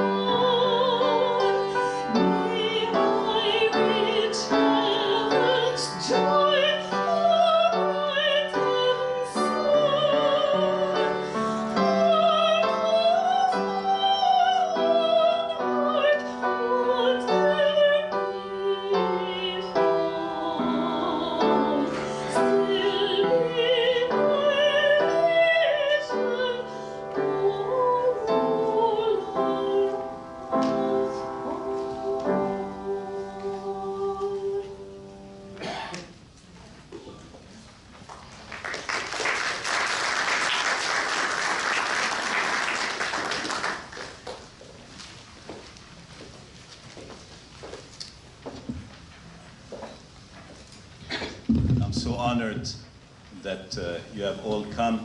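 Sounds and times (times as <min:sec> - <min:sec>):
person singing classical solo: 0:00.0 - 0:34.9
piano accompaniment: 0:00.0 - 0:36.3.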